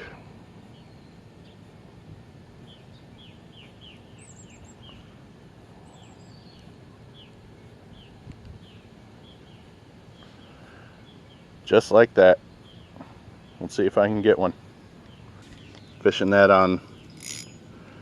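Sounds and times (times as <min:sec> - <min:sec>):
small birds chirping: 0:00.0 - 0:01.8, 0:02.6 - 0:18.0
outdoor background noise: 0:00.0 - 0:18.0.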